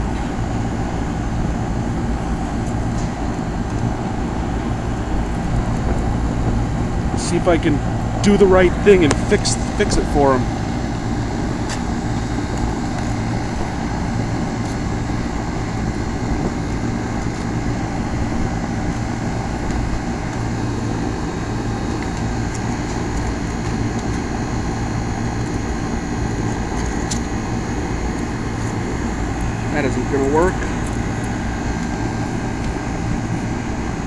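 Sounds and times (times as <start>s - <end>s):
compressor hum: 0.0s - 34.0s
condenser fan whoosh: 0.0s - 34.0s.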